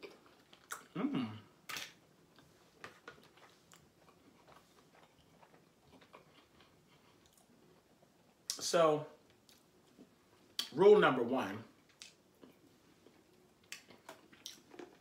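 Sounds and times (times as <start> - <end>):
chewing mouth noises: 3.0 - 8.0, 11.9 - 15.0.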